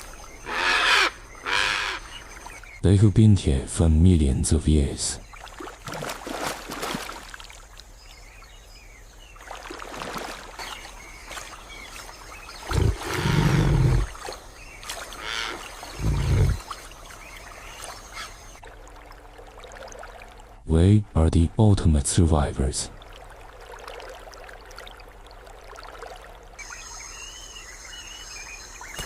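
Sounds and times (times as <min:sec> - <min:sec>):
river water splashing: 0:05.2 - 0:20.7, 0:22.9 - 0:29.0.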